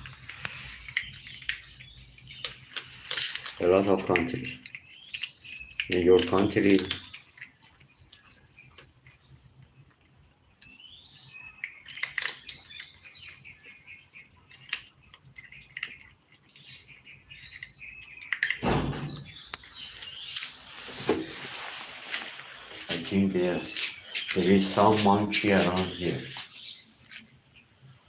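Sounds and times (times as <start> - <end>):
insects droning: 0.0 - 28.0
low thump or rustle: 18.6 - 19.4, 20.4 - 22.4.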